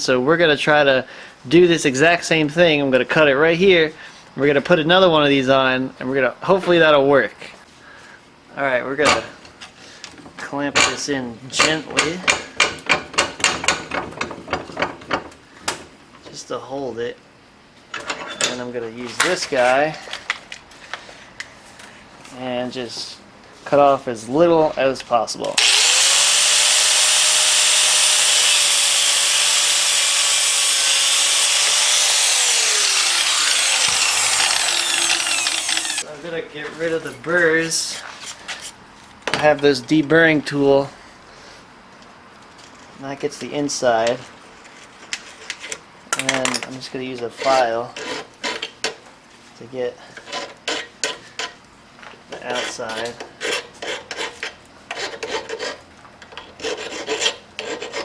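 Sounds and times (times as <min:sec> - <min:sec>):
hand file rasping on metal: 0:25.6 - 0:36.0, 0:52.4 - 0:55.8, 0:56.6 - 0:58.0
power tool cutting steel: 0:25.6 - 0:36.1.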